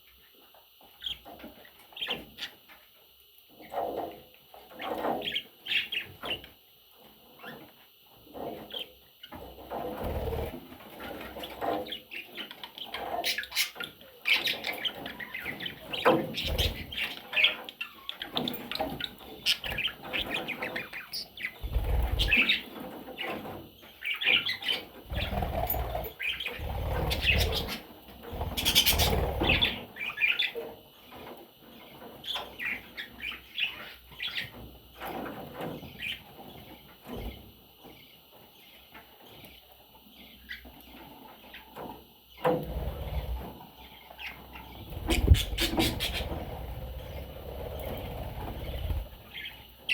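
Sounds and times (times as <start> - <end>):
budgerigars chirping: 11.9 - 23.4, 24.0 - 27.8, 28.4 - 30.6, 43.8 - 49.9
wing flutters and thumps: 25.1 - 29.8, 44.9 - 49.4.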